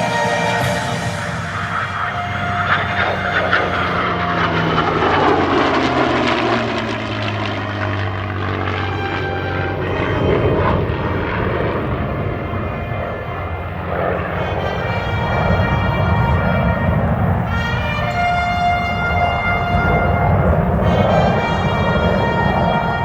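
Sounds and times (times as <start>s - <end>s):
background music: 0.0s - 6.8s
aircraft flying past: 0.0s - 23.0s.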